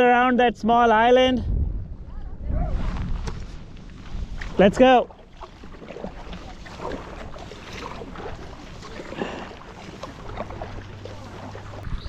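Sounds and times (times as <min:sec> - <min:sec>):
wind rumbling on microphone: 0:00.5 - 0:12.0
paddle splashing in water: 0:02.8 - 0:12.0.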